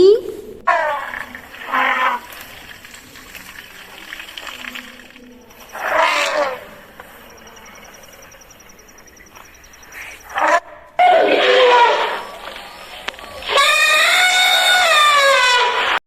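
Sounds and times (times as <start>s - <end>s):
rough animal noise: 0.2s - 16.0s
elephant trumpeting: 0.6s - 4.6s, 5.6s - 8.5s, 10.0s - 16.0s.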